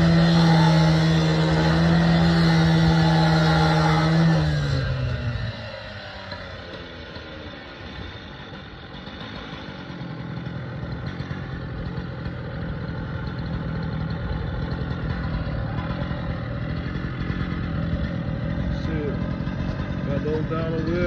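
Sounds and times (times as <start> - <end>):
engine running: 0.0 - 21.0
clatter: 7.9 - 21.0.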